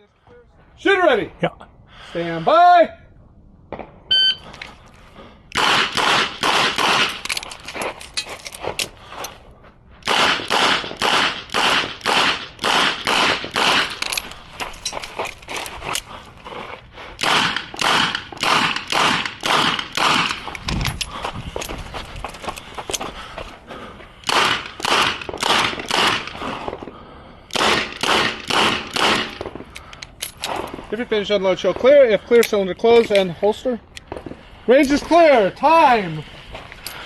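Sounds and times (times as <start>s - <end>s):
shot timer beep: 4.1s - 4.4s.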